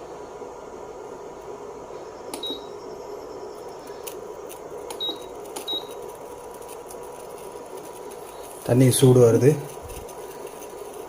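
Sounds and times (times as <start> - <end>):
stove humming: 0.0 - 11.0
high beeps: 2.4 - 2.7, 5.0 - 5.9.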